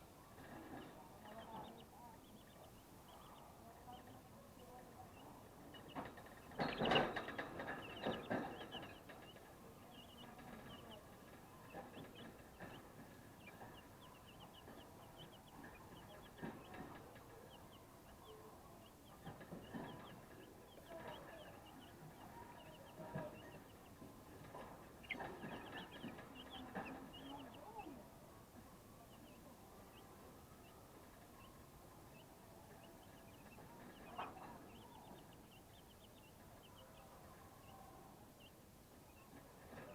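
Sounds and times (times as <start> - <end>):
chicks peeping: 0.0 - 39.9
knocks and rustles: 5.1 - 27.6.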